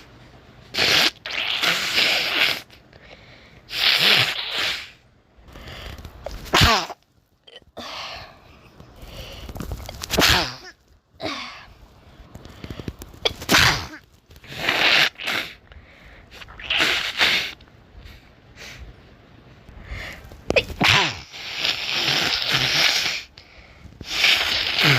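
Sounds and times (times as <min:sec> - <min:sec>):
person blowing nose: 0:00.6 - 0:02.8, 0:03.7 - 0:05.0, 0:06.3 - 0:07.0, 0:09.9 - 0:10.7, 0:13.2 - 0:15.6, 0:16.3 - 0:17.6, 0:20.6 - 0:23.4, 0:24.0 - 0:24.9
person sneezing: 0:06.4 - 0:07.0, 0:10.0 - 0:11.6, 0:13.2 - 0:15.6, 0:20.6 - 0:23.3, 0:24.1 - 0:24.9.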